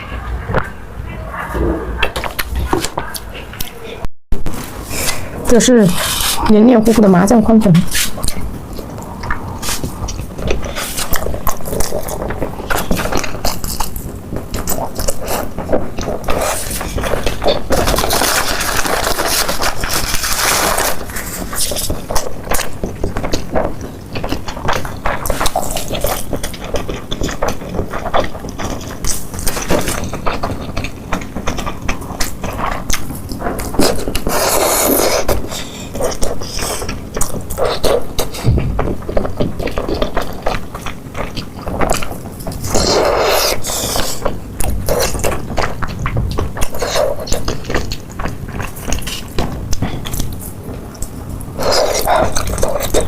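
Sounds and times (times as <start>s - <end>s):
noodles being slurped: 14.6s - 23.5s, 42.6s - 45.4s.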